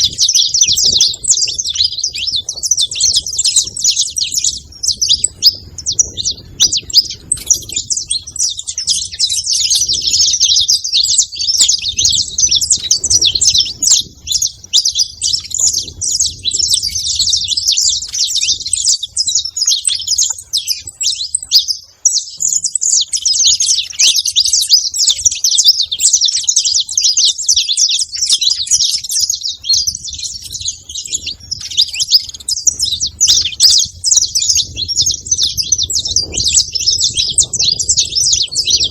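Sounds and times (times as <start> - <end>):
finch singing high chirps: 0.0 - 38.9.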